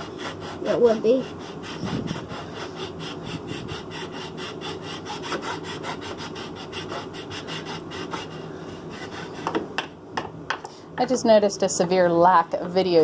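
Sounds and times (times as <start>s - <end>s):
hand rasp scraping wood: 0.0s - 9.6s.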